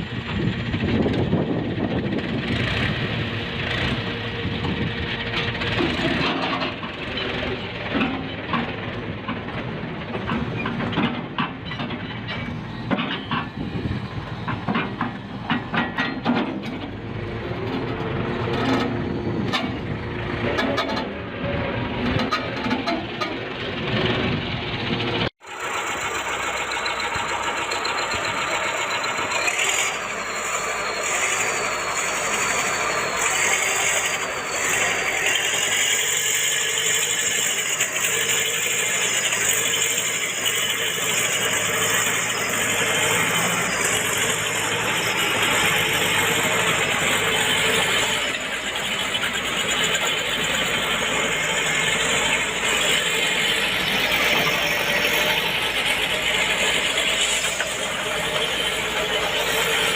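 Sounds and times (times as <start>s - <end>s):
vehicle engine running: 16.7s - 59.9s.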